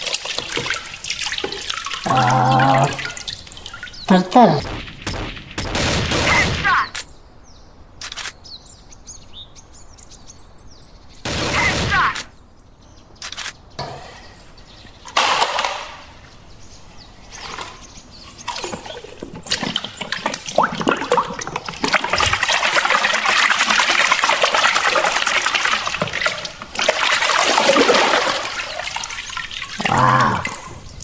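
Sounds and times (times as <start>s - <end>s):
water running: 0.0s - 4.6s, 13.8s - 31.0s
water splashing: 0.0s - 4.6s, 13.8s - 31.0s.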